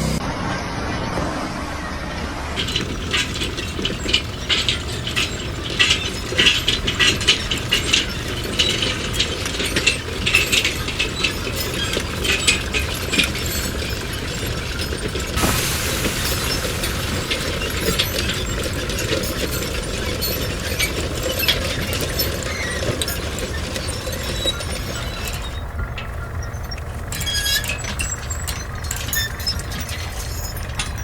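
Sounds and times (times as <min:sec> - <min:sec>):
low machine hum: 0:00.0 - 0:31.0
metallic clicking and clattering: 0:02.6 - 0:31.0
steady hiss: 0:15.4 - 0:18.6.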